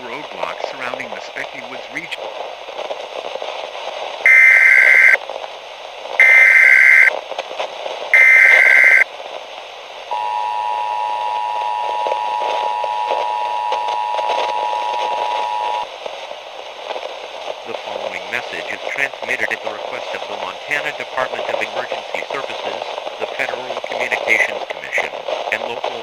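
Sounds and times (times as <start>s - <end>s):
radio static hiss: 0.0s - 2.4s, 4.2s - 5.2s, 6.2s - 7.2s, 8.1s - 9.1s, 10.1s - 15.9s, 17.6s - 26.0s
steady two-tone alert signal: 4.3s - 5.2s, 6.2s - 7.1s, 8.2s - 9.0s, 10.1s - 15.8s
warbling data tone bursts: 4.3s - 5.2s, 6.2s - 7.1s, 8.2s - 9.0s, 10.1s - 15.9s.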